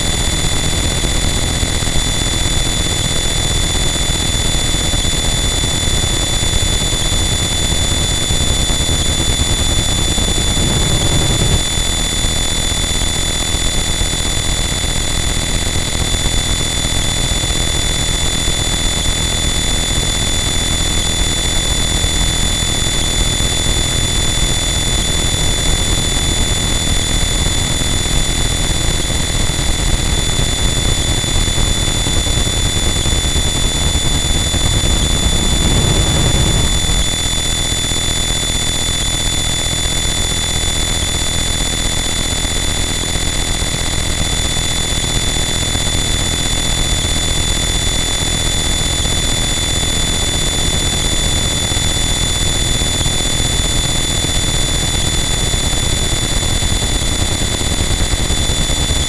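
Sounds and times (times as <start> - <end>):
dense static noise wall: 21.6 - 37.6.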